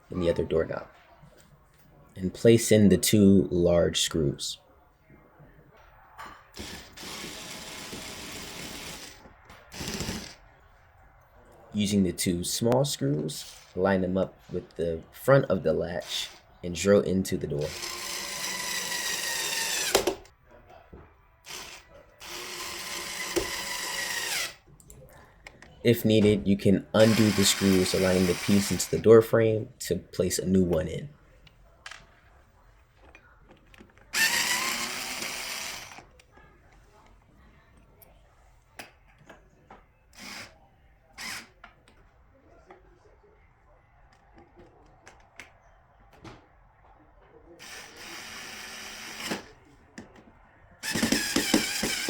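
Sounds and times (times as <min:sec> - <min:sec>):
electric drill motor whining: 0:06.6 - 0:10.4, 0:17.7 - 0:20.3, 0:21.5 - 0:24.6, 0:27.0 - 0:29.0, 0:34.2 - 0:36.0, 0:40.2 - 0:40.5, 0:41.2 - 0:41.5, 0:47.6 - 0:49.5, 0:50.8 - 0:52.0.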